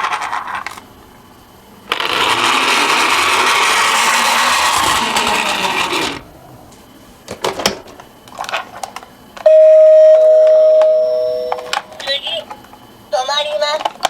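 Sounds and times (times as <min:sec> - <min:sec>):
toy cars rolling down plastic slope: 0:01.9 - 0:06.2.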